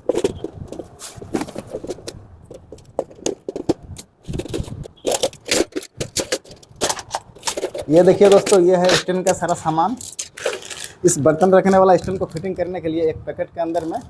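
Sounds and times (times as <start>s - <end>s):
packaging rustling: 0.0s - 11.0s
metal strips scraping and clinking: 1.0s - 11.0s.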